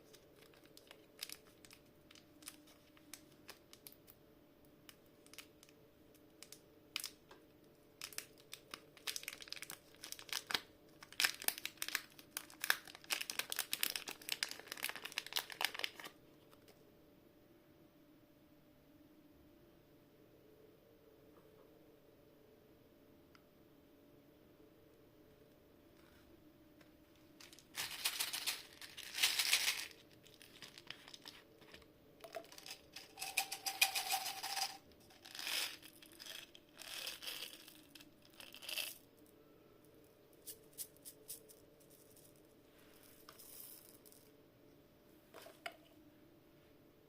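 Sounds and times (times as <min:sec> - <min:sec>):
candies crackling and rattling: 0:00.0 - 0:04.2, 0:05.1 - 0:05.8, 0:06.4 - 0:07.3, 0:08.0 - 0:16.2, 0:27.2 - 0:39.1, 0:43.0 - 0:44.3.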